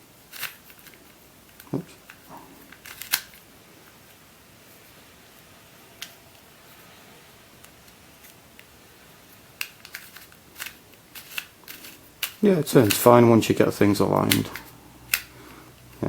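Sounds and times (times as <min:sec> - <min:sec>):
plastic puzzle clicking: 0:00.3 - 0:03.5, 0:09.4 - 0:16.0.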